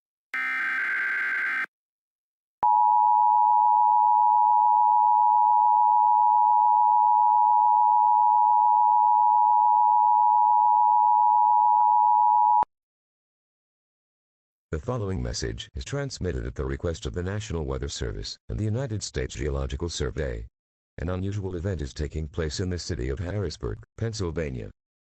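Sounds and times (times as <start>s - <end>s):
digital data burst screech: 0.4s - 1.7s.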